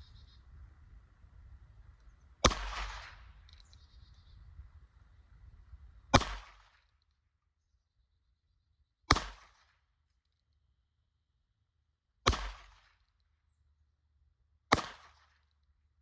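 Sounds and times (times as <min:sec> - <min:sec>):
gunshots with echo: 0:02.4 - 0:03.4, 0:06.2 - 0:06.6.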